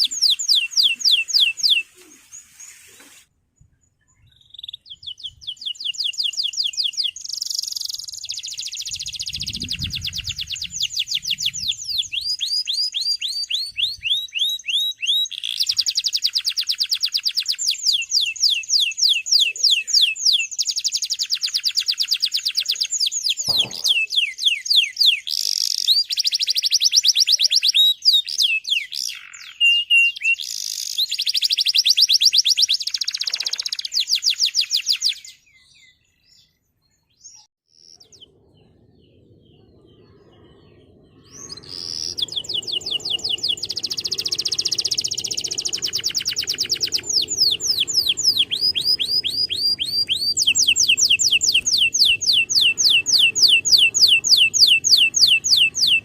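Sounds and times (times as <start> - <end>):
canary singing trills: 0.0 - 2.9, 4.1 - 36.5, 37.1 - 56.0
faint hiss: 0.8 - 3.4.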